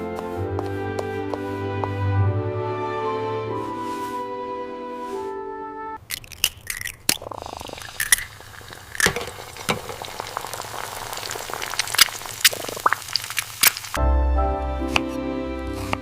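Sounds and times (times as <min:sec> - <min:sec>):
food sizzling in a pan: 0:07.2 - 0:14.0.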